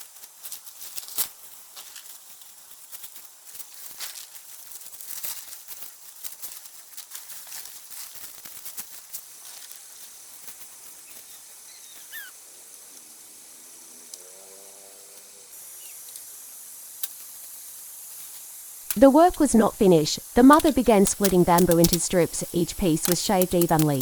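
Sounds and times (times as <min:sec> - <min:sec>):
faint steady hiss: 0:18.9 - 0:24.0.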